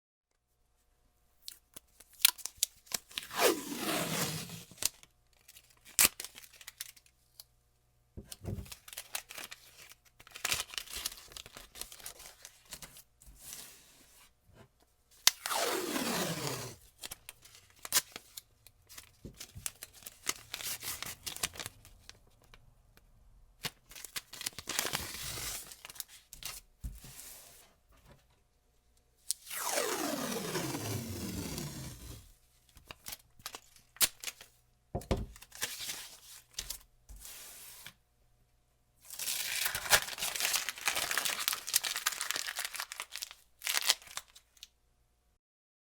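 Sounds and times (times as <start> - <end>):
tape tearing and crinkling: 2.2 - 7.0, 15.2 - 21.8, 29.4 - 34.5, 39.1 - 44.4
tape pulled off roll screeching: 15.4 - 16.8, 29.5 - 32.2.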